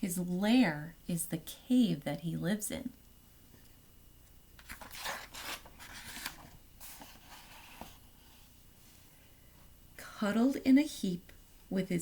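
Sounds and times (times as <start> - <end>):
paper page rustling: 4.6 - 8.0.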